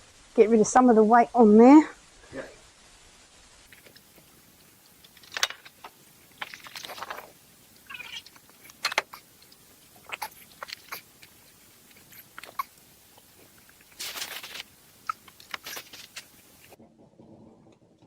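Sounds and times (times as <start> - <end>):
crunching rustles: 3.5 - 16.8.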